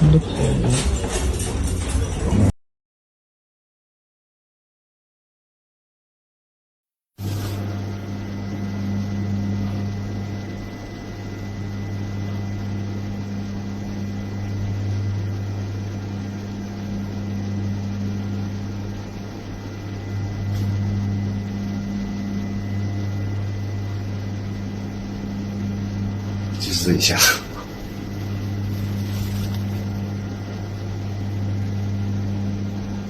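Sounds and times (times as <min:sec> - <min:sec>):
low mechanical hum: 0:00.0 - 0:02.5, 0:07.2 - 0:33.0.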